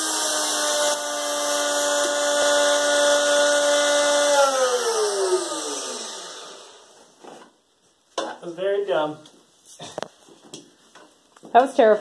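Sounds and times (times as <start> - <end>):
electric wood router whining: 0.0 - 7.0.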